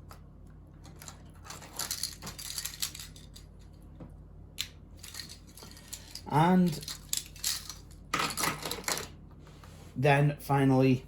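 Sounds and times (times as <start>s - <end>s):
low steady hum: 0.0s - 11.0s
small objects clicking and rustling: 0.8s - 3.8s, 4.6s - 9.1s.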